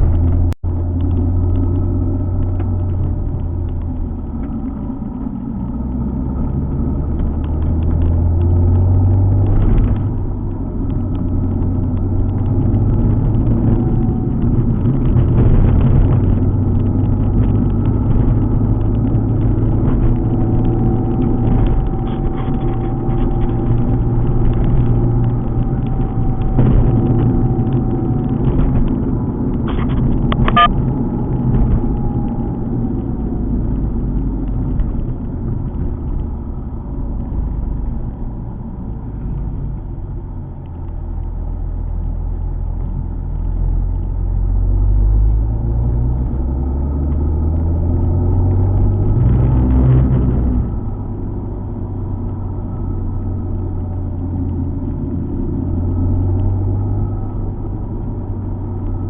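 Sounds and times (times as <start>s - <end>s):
car engine running: 0.0s - 59.0s
road noise rumble: 0.0s - 59.0s.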